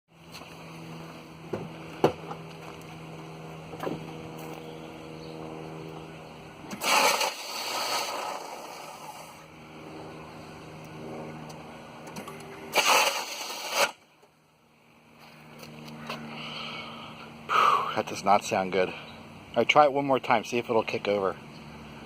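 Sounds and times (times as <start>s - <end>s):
steady low hum: 0.1s - 22.0s
car starter grinding: 6.7s - 9.3s.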